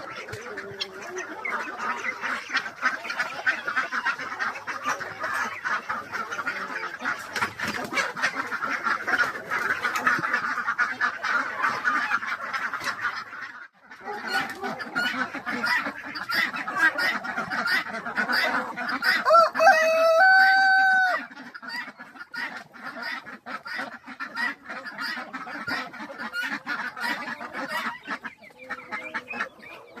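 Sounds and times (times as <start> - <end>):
chickens clucking: 0.0 - 30.0
rooster crowing: 19.2 - 21.2.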